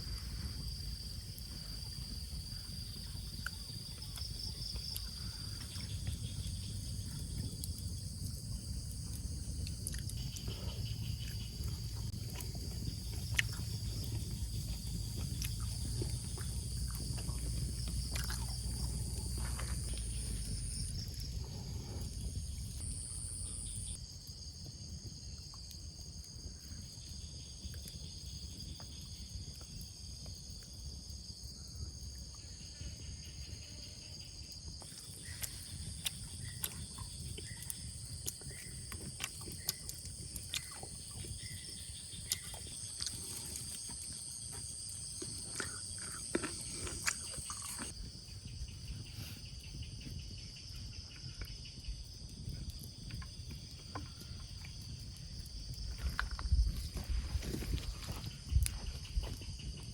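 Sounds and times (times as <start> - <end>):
low rumbling background: 0.0 - 24.0
insects chirring: 0.0 - 59.9.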